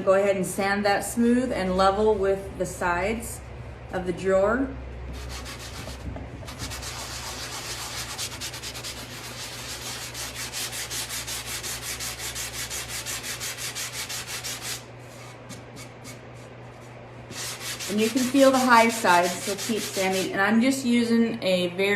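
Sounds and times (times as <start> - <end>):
sanding block rubbing on wood: 5.1 - 16.3, 17.3 - 20.4.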